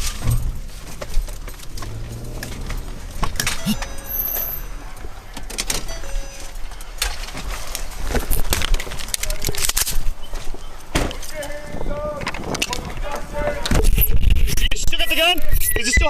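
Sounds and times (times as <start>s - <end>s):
car engine running: 0.0s - 6.7s.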